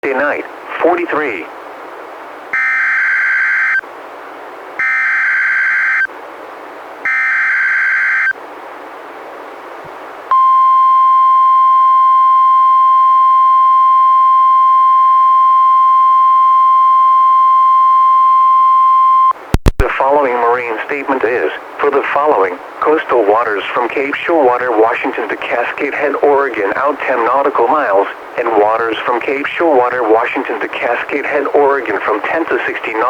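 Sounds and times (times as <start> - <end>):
faint radio hiss: 0.0 - 10.3, 19.4 - 33.0
screeching data tones: 2.6 - 3.8, 4.8 - 6.1, 7.1 - 8.4
steady warning alarm tone: 2.6 - 3.8, 4.8 - 6.1, 7.1 - 8.4.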